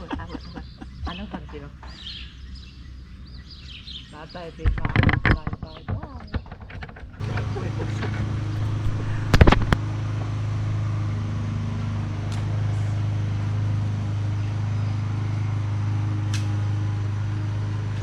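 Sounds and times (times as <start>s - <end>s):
electric trolling motor humming: 7.0s - 18.0s
sharp knocks: 8.6s - 9.8s.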